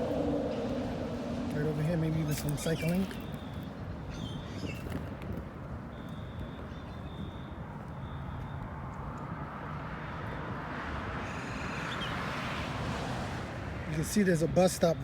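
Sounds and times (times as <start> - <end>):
passing vehicle tyre noise: 0.0 - 4.0, 8.8 - 14.4
traffic rumble: 0.0 - 15.0.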